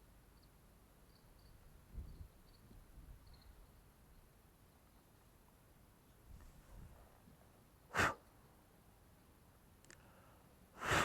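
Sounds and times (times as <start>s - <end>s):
faint insect chirp: 0.0s - 6.4s.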